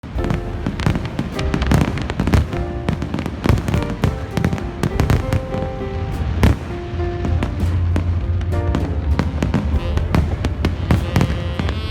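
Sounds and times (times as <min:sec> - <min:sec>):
fireworks bangs: 0:00.0 - 0:11.9
music with held notes: 0:00.0 - 0:11.9.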